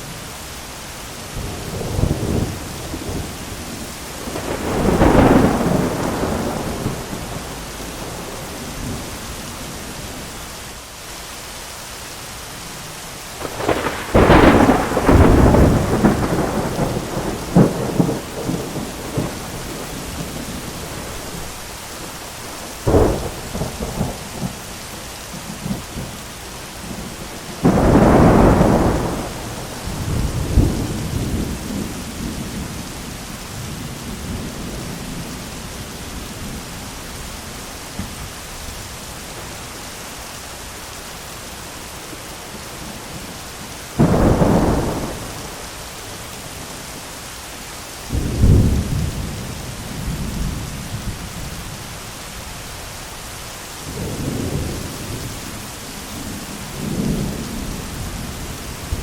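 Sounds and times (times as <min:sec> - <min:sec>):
heavy rain: 0:00.0 - 0:59.0
crackling lightning strikes: 0:01.4 - 0:09.2, 0:13.4 - 0:24.7, 0:26.8 - 0:35.7, 0:43.9 - 0:46.8, 0:48.1 - 0:51.8
rolling thunder: 0:01.4 - 0:09.2, 0:13.4 - 0:21.6, 0:22.6 - 0:24.6, 0:26.8 - 0:37.0, 0:43.9 - 0:45.8, 0:48.1 - 0:51.9
sharp thunder crack: 0:04.3 - 0:08.3, 0:13.4 - 0:19.5, 0:44.0 - 0:45.7.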